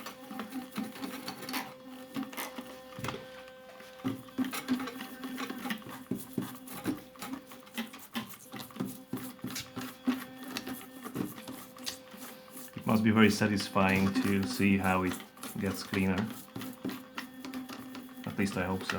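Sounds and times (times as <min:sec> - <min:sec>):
scratchy brushing on metal: 0:00.0 - 0:03.0, 0:03.6 - 0:18.9
electric toothbrush buzzing: 0:00.0 - 0:18.9.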